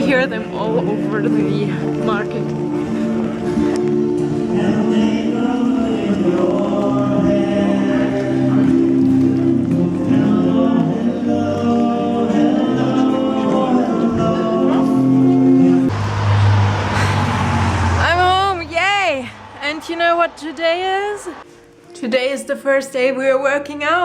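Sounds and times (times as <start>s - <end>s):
choir-like voices singing: 0.0s - 18.2s.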